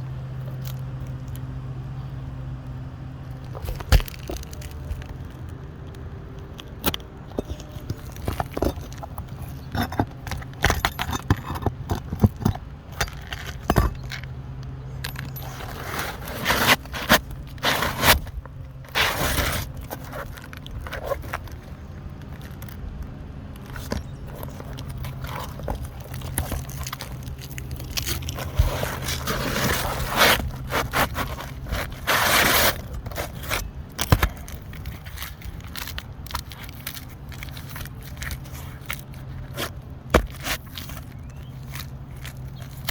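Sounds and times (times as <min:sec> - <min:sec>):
scraping and knocking: 0:15.0 - 0:21.6, 0:23.6 - 0:41.1.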